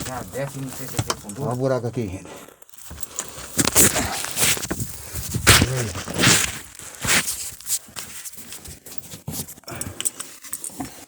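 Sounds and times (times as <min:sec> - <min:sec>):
scrapes on rock and grit: 0:02.2 - 0:08.2
person grunting: 0:05.6 - 0:06.1
heavy breathing: 0:09.6 - 0:10.2.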